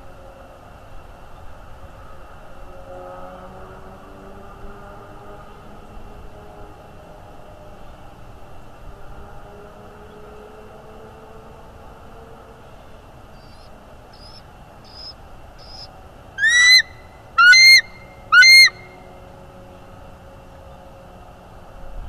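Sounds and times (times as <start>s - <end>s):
eagle calling: 13.4s - 18.9s.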